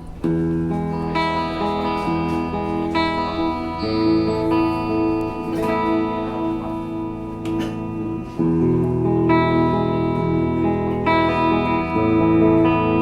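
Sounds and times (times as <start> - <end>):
electric guitar ringing chords: 0.0 - 13.0.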